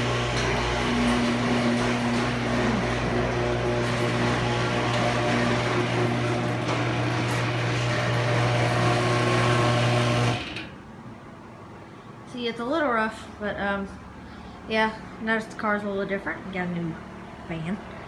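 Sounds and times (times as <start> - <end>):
garage door opener motor hum: 0.0 - 10.9.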